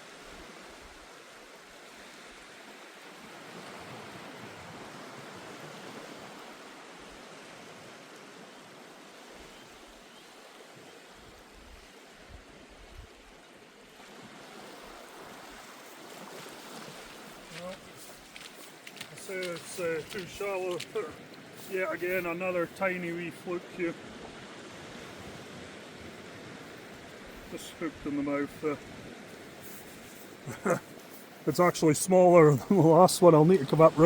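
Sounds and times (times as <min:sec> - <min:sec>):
surf washing onto beach: 0:13.9 - 0:34.0.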